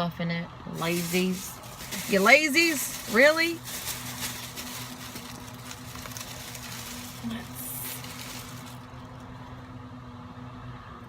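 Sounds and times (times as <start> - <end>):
low hum inside a car: 0.0 - 11.0.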